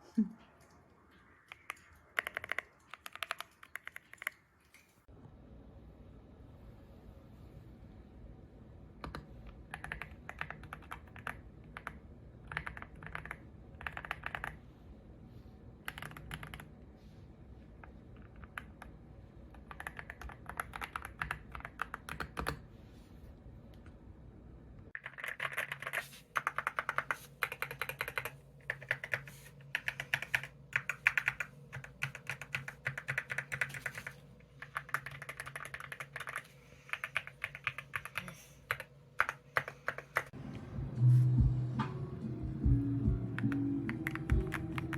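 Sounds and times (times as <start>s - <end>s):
mechanical keyboard typing: 1.5s - 4.4s, 9.0s - 14.6s, 15.9s - 16.7s, 19.5s - 22.6s, 25.0s - 40.4s, 43.3s - 44.9s.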